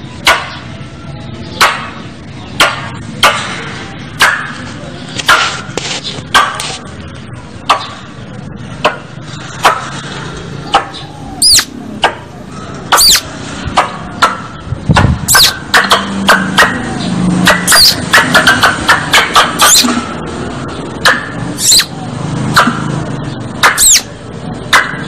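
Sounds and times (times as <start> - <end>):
squirrel sharp chipping calls: 10.6 - 20.0, 21.0 - 22.7, 23.6 - 25.0
whistled call sliding down: 11.4 - 11.8, 12.9 - 13.3, 15.3 - 15.6, 21.6 - 21.9, 23.8 - 24.1.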